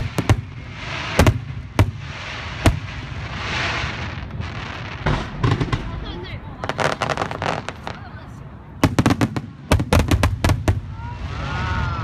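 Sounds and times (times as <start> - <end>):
fireworks hiss: 0.0 - 6.0
fireworks bangs: 0.0 - 12.0.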